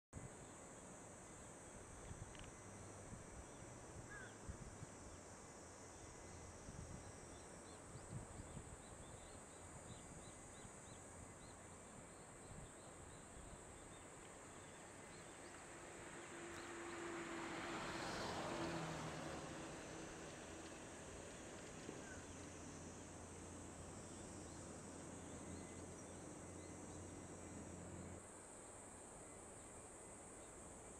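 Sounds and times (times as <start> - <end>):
vehicle engine hum: 13.0 - 28.3.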